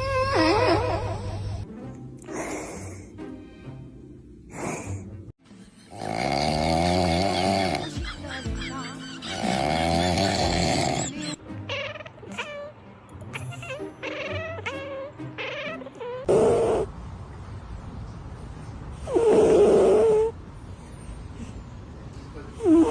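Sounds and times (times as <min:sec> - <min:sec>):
cat rasping snores: 0:05.9 - 0:07.8, 0:09.4 - 0:11.2, 0:16.2 - 0:16.9, 0:19.0 - 0:20.4
cat squeaking breaths: 0:09.2 - 0:12.7, 0:13.3 - 0:16.8.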